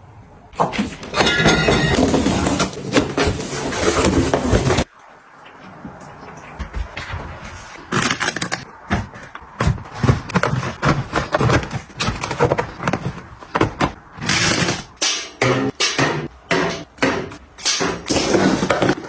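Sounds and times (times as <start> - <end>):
items knocking and tapping: 5.5 - 19.0.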